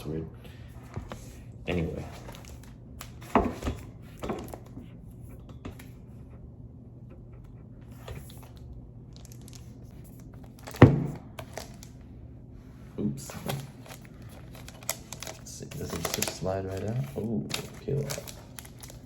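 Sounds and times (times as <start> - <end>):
cardboard and paper rustling: 0.8 - 6.0, 7.9 - 12.0, 13.2 - 19.0.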